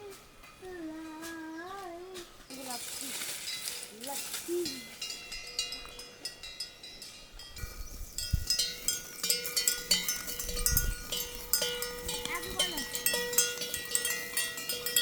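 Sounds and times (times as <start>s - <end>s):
cattle bells clanking: 3.4s - 15.0s.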